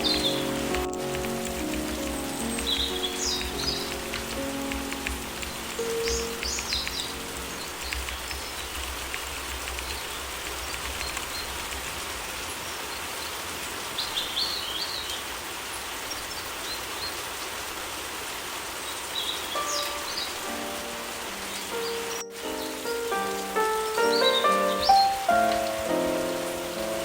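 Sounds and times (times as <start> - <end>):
steady rain falling: 0.0 - 27.0.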